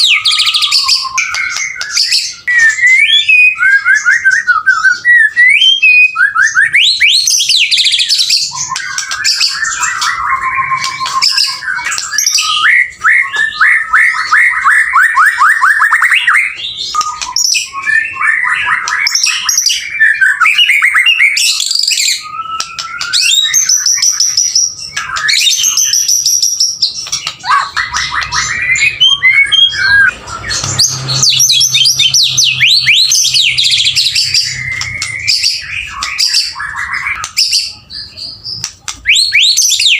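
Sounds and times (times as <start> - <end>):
songbird singing: 0.0 - 39.9.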